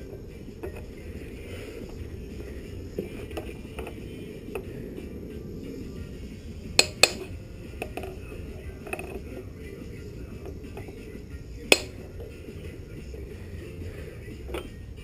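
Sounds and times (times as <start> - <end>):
sharp ringing metal strikes: 6.8 - 7.3
hammer tapping on metal: 6.8 - 8.1, 11.7 - 12.0.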